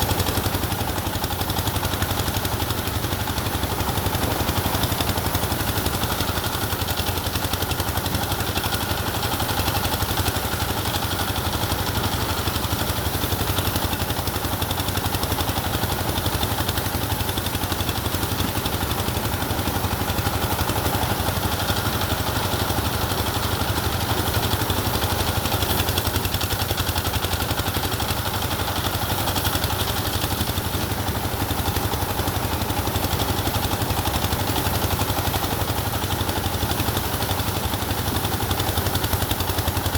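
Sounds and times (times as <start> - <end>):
engine running steadily: 0.0 - 39.9.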